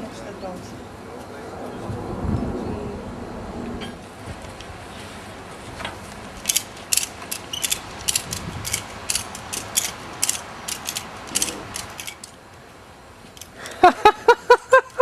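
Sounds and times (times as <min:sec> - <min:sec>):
sharp irregular clicks: 0:06.4 - 0:12.4.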